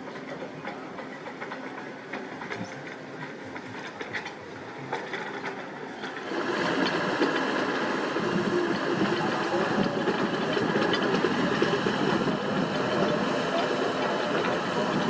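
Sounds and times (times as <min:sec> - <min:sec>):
excavator diesel engine: 0:00.0 - 0:15.0.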